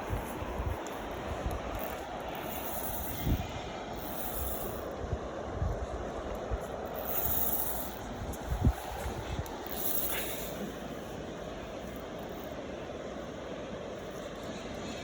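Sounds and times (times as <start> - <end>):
wind buffeting microphone: 0.0 - 10.4.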